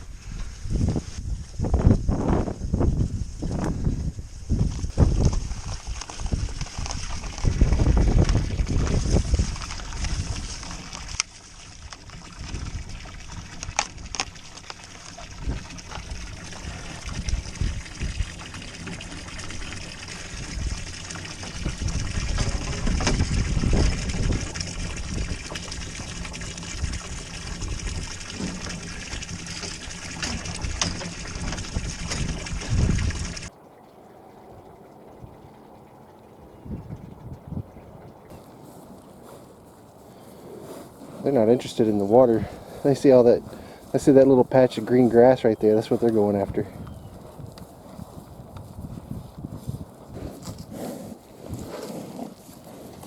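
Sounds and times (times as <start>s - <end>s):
water pouring into a tank: 4.9s - 37.4s.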